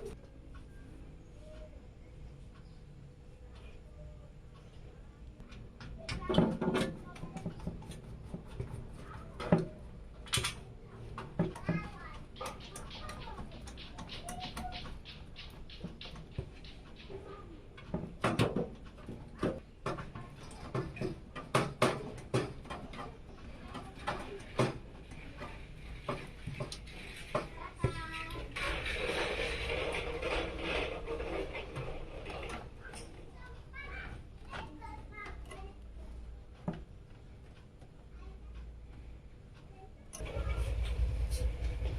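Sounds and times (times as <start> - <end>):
computer parts clicking and knocking: 5.4 - 33.2.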